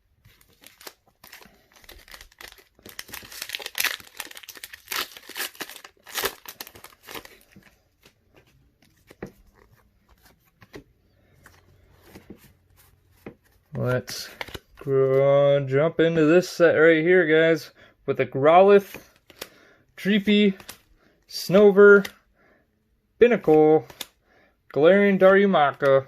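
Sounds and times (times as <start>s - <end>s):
cards rustling: 0.1s - 15.2s, 18.8s - 22.2s, 23.3s - 24.2s
foil pack tearing and crinkling: 0.4s - 7.5s.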